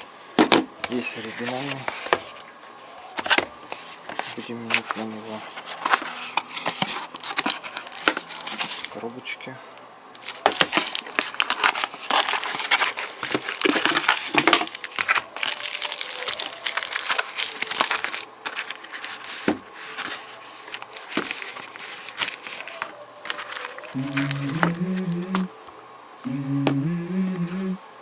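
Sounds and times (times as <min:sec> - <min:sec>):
packaging crinkling and rustling: 0:10.8 - 0:19.4.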